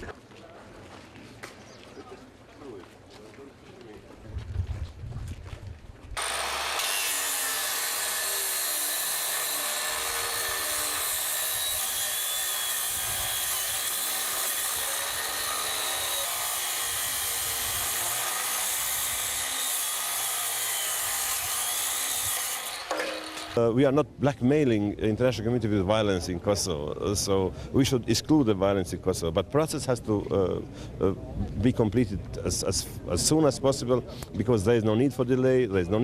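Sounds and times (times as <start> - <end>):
angle grinder cutting steel: 6.2 - 23.6.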